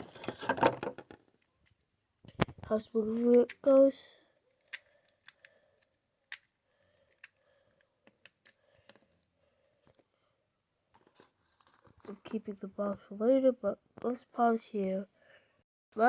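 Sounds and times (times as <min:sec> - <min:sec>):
plastic puzzle cube clicks: 0:04.5 - 0:09.1.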